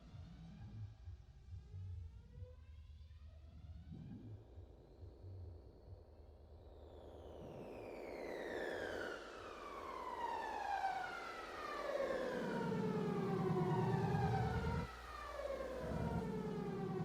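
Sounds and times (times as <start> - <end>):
low electronic buzzing: 12.8 - 17.0.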